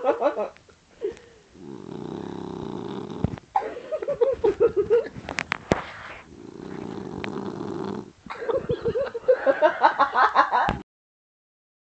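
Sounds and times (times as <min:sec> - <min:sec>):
dog snoring: 0:01.6 - 0:03.4, 0:05.9 - 0:08.2.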